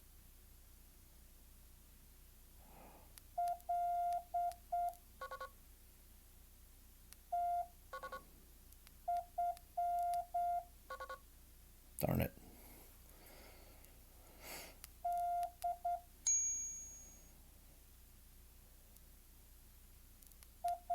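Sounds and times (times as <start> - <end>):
morse code beeps: 3.4 - 5.5, 7.3 - 8.2, 9.1 - 11.2, 15.0 - 16.0.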